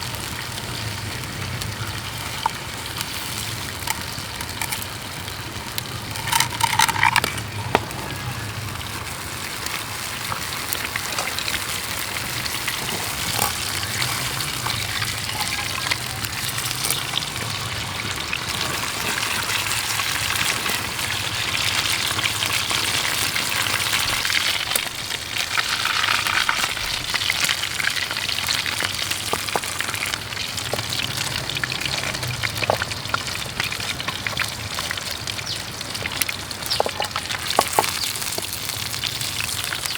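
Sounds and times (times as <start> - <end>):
steak sizzling in a pan: 0.0 - 39.9.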